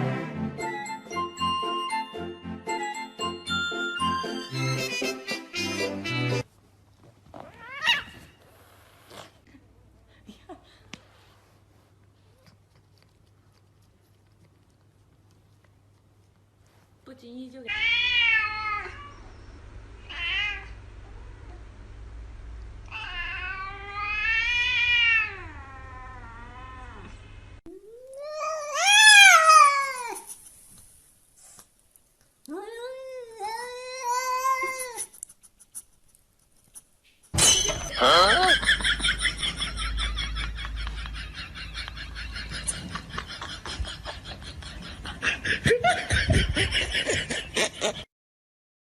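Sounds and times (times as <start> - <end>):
cat meowing: 17.7 - 19.2, 20.0 - 21.6, 22.9 - 27.2
people laughing: 37.9 - 48.1.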